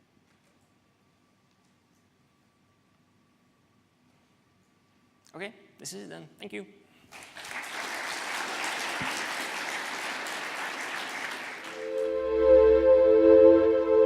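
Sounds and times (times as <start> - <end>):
audience applauding: 7.1 - 12.2
held synthesizer chord: 11.7 - 14.0.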